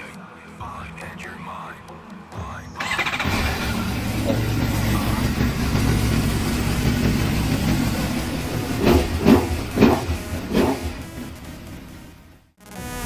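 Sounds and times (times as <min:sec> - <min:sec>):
motorcycle engine idling: 0:02.8 - 0:12.4
motorcycle engine revving bursts: 0:02.8 - 0:12.4.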